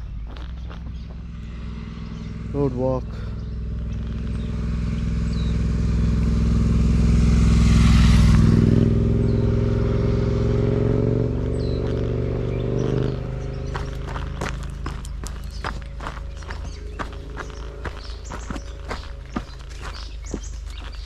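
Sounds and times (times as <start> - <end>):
vehicle driving past: 0.7 - 21.0.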